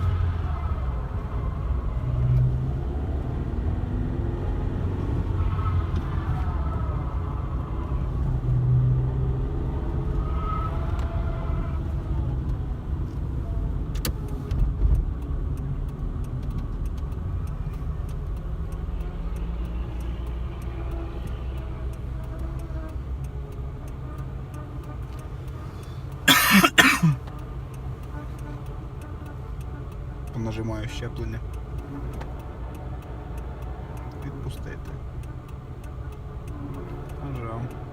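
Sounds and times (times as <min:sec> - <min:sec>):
car engine humming: 0:11.8 - 0:37.9.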